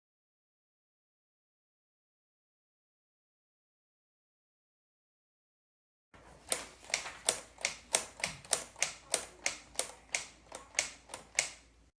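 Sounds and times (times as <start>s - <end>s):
plastic typewriter clacking: 6.3s - 11.6s.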